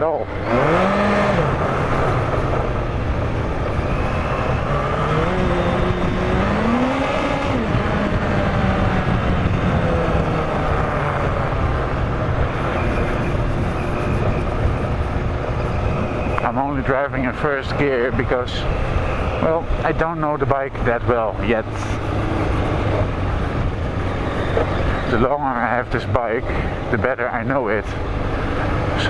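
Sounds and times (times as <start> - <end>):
motorcycle engine revving: 0.0 - 17.8, 20.9 - 25.6.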